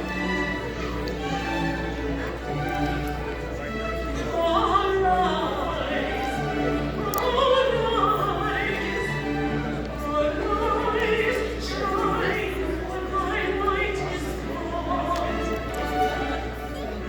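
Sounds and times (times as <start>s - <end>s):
operatic singing: 0.0s - 17.0s.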